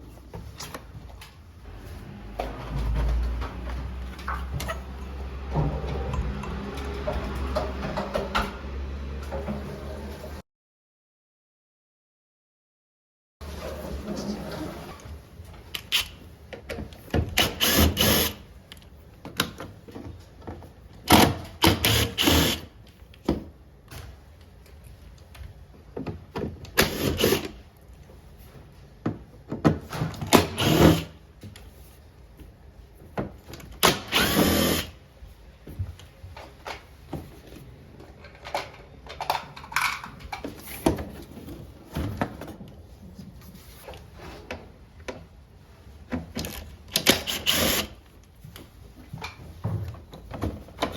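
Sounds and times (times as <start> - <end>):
power screwdriver running: 21.8 - 22.6, 34.0 - 34.9, 47.2 - 47.9.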